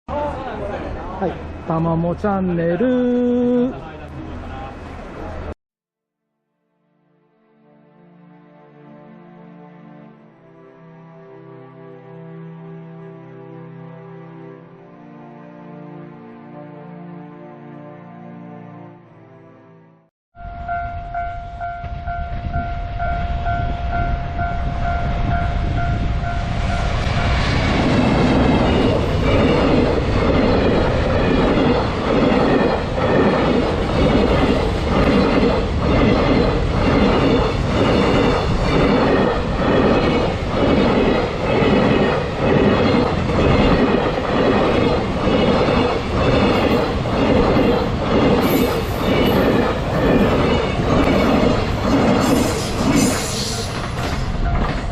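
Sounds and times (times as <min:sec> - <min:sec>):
high wheel squeal: 0:48.4 - 0:54.7.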